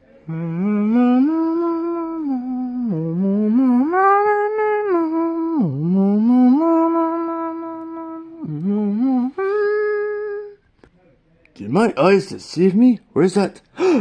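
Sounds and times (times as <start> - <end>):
person humming: 0.3 - 10.6.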